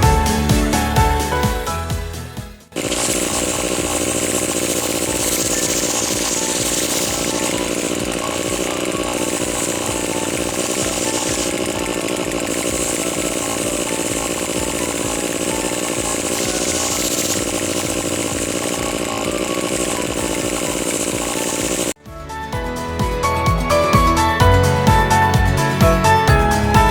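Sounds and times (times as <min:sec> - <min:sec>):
small two-stroke engine running: 0:02.7 - 0:22.0.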